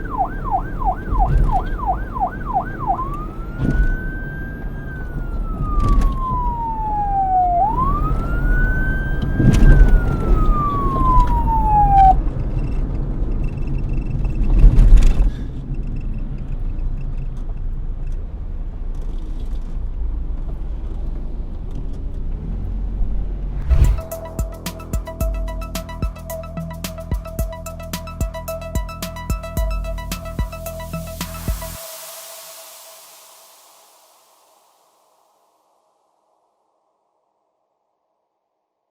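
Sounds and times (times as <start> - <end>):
police siren wailing: 0.0 - 12.3, 23.7 - 32.3
street noise: 0.0 - 34.0.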